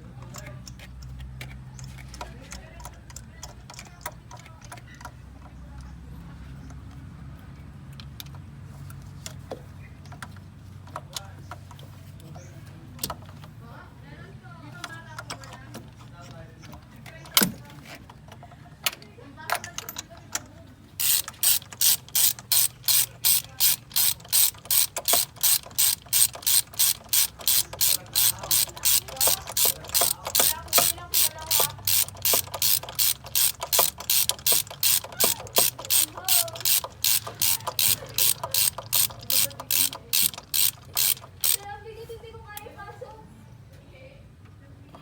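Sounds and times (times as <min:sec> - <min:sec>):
sharp mechanical clicking: 0:21.0 - 0:41.8.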